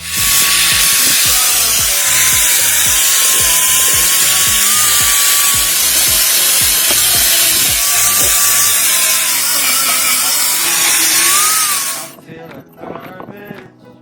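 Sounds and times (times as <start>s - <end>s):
bass drum beating: 0.0s - 9.6s
harsh wash of music: 0.0s - 12.2s.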